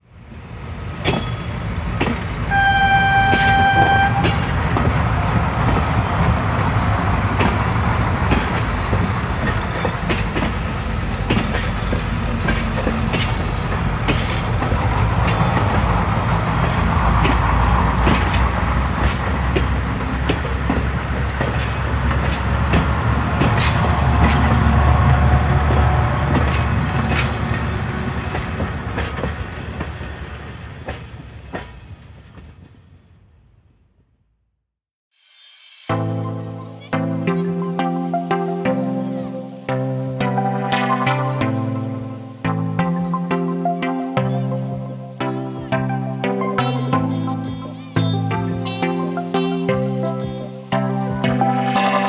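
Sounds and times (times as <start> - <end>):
train rumble: 0.0 - 34.0, 35.9 - 52.0
wheels clicking over rail joints: 0.3 - 33.0
train horn blast: 2.5 - 4.9.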